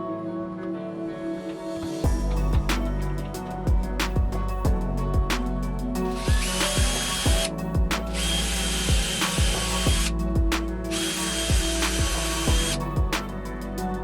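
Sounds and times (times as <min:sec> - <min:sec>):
background music with steady beat: 0:00.0 - 0:14.0
power tool motor whining: 0:08.2 - 0:10.1, 0:10.9 - 0:12.7.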